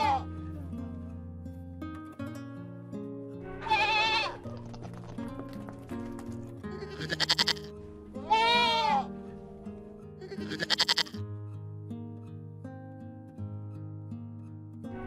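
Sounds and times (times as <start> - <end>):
goat bleating: 0.0 - 0.4, 3.6 - 4.6, 6.7 - 9.1, 10.2 - 11.2
background music: 0.0 - 15.0.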